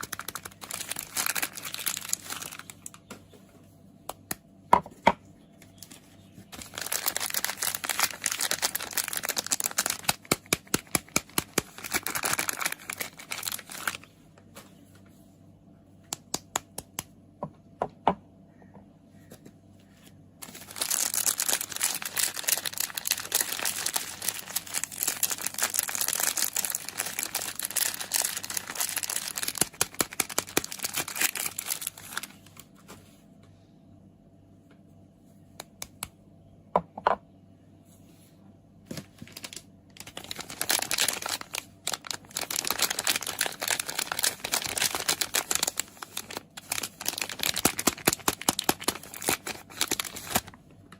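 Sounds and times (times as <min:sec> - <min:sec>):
packaging crinkling and tearing: 0:00.0 - 0:03.1, 0:05.8 - 0:14.2, 0:20.4 - 0:32.8, 0:38.9 - 0:50.6.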